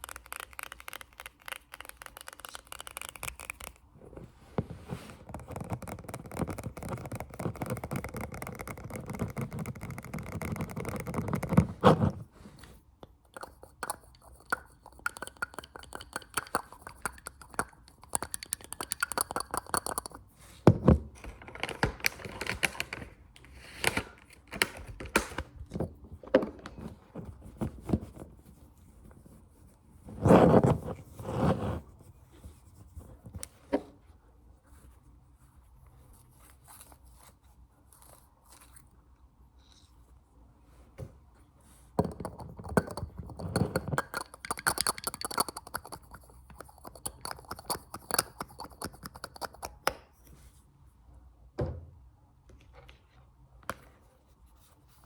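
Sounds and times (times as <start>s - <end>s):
finger scratching: 5.0s - 12.3s.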